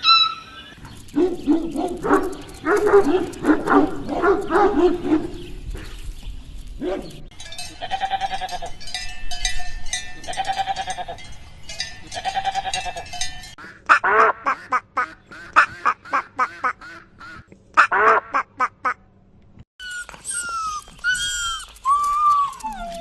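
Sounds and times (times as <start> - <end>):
duck quacking: 13.6 - 19.0.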